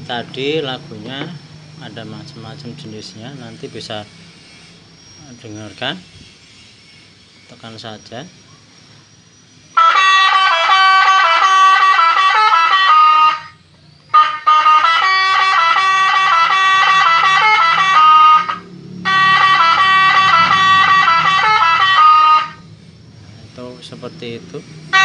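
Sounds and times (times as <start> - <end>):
electronic bus horn melody: 9.8 - 22.7.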